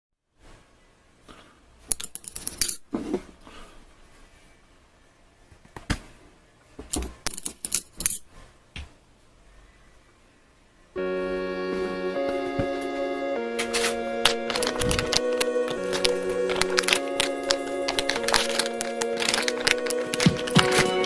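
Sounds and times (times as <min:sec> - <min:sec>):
small hard objects clicking: 0:01.9 - 0:02.8, 0:14.5 - 0:21.0.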